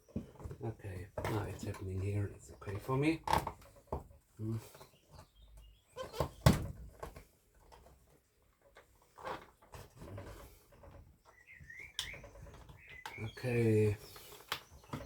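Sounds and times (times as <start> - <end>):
short squeaks: 5.9 - 6.5.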